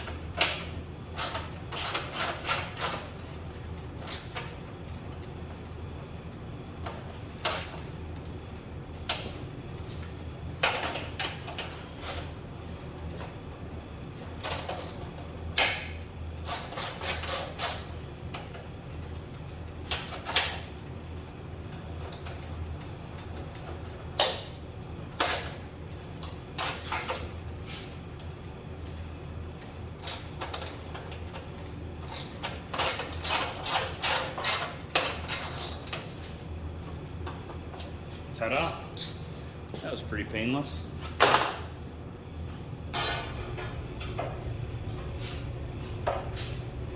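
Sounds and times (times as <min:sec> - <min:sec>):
metallic clicks and rattles of tools: 0:00.0 - 0:09.5, 0:10.6 - 0:27.6, 0:28.2 - 0:37.9
steady low hum: 0:00.0 - 0:46.9.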